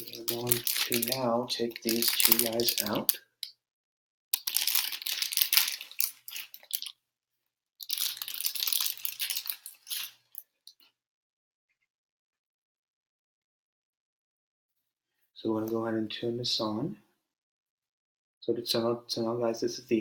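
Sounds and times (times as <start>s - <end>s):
plastic and cardboard packaging crinkling: 0.0s - 3.2s, 4.4s - 6.9s, 7.8s - 10.4s.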